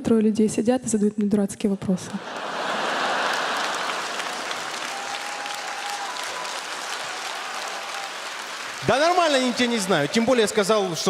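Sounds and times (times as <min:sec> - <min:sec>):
studio audience applauding: 0:02.2 - 0:11.0.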